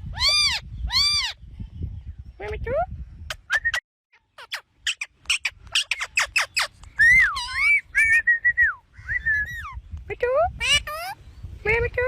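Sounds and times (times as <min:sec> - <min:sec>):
parrot chirping: 0:00.1 - 0:01.4, 0:03.3 - 0:08.3.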